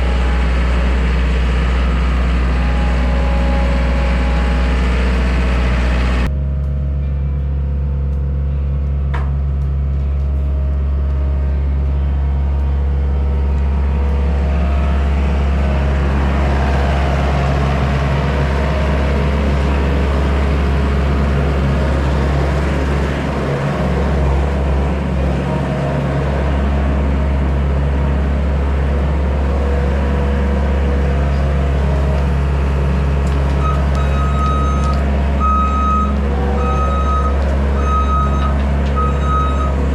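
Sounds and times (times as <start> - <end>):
skid steer engine running: 0.0 - 39.9
backup alarm beeping: 33.6 - 39.9.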